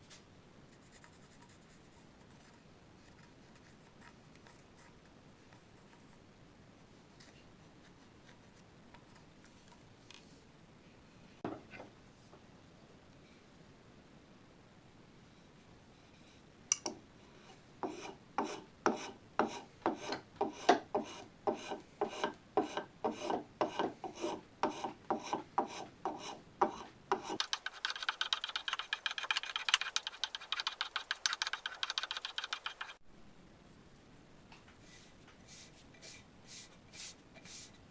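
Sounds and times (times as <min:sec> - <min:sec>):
rasp filing wood: 0:17.8 - 0:33.0.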